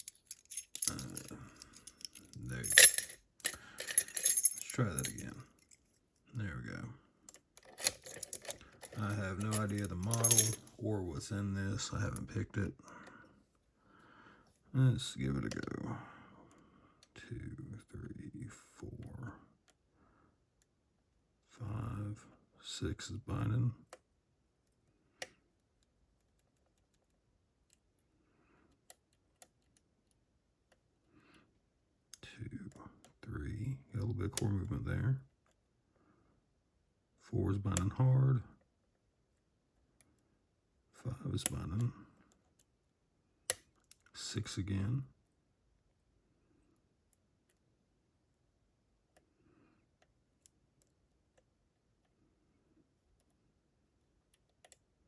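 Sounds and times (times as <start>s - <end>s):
lock pick clicking on pins: 0.0s - 5.2s, 7.3s - 10.6s
lock pick clicking in a lock: 7.3s - 10.6s.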